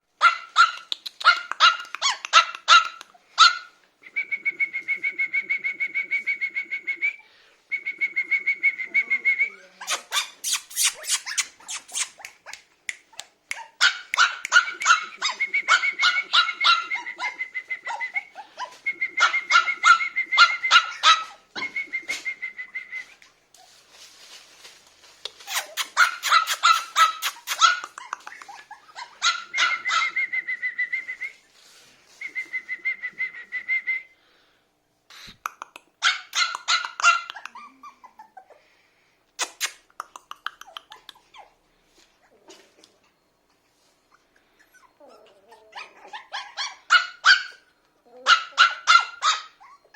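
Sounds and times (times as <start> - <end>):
puppy yapping: 0.2 - 3.7, 13.5 - 21.4, 25.4 - 30.2, 36.0 - 38.5, 44.7 - 49.9.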